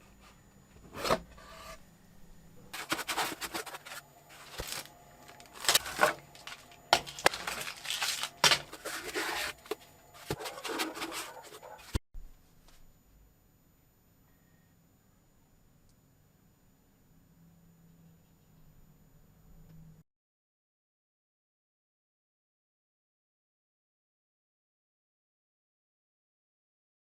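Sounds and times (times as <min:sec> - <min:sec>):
hands rubbing and scraping packaging: 0:02.8 - 0:12.0.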